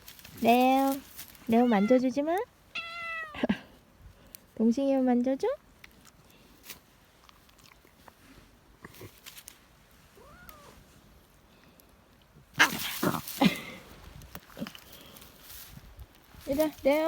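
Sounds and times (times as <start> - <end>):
cat meowing: 1.5 - 2.1, 2.7 - 3.5, 10.2 - 10.8.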